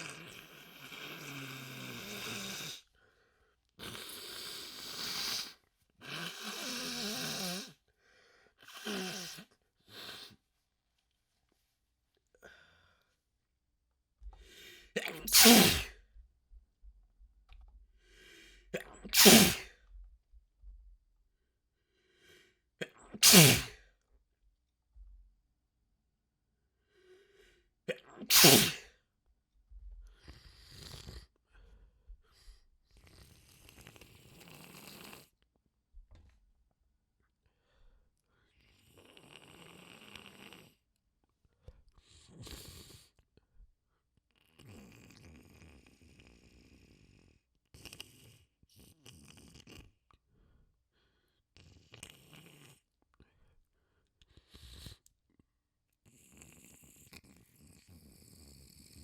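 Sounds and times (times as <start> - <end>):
wet congested sniffling: 14.4 - 16.0, 18.2 - 19.8, 22.1 - 23.9, 27.9 - 28.9.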